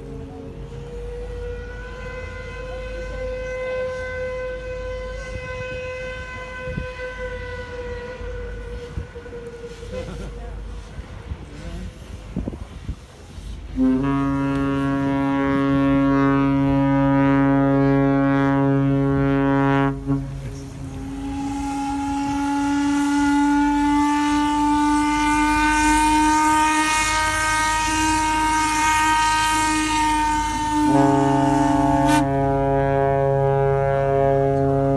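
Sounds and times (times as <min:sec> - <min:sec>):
ship's horn long blast: 0:00.0 - 0:34.9
short horn toot: 0:13.8 - 0:34.9.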